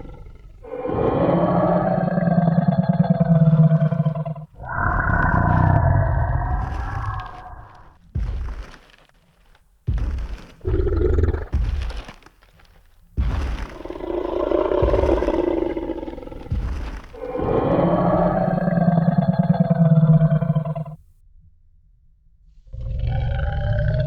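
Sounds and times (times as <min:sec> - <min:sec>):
dinosaur growls and roars: 0:00.0 - 0:08.0, 0:10.6 - 0:12.1, 0:13.2 - 0:21.0, 0:22.6 - 0:24.0
heavy low thuds: 0:03.7 - 0:19.7.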